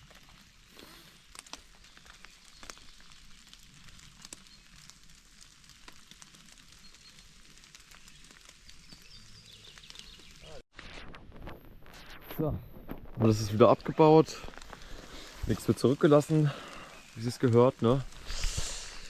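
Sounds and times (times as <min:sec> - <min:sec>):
steady rain hiss: 0:12.3 - 0:19.0.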